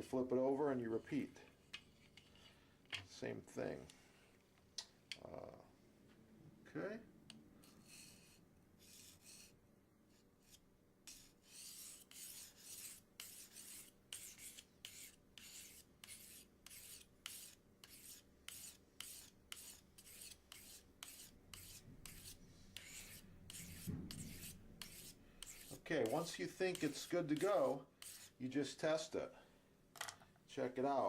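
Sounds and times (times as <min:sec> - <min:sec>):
knife scraping on sharpening file: 0:10.4 - 0:28.4.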